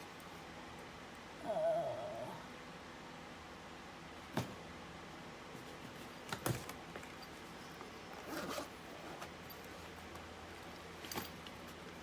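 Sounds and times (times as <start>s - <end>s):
scraping rustle of tools: 5.6s - 12.0s.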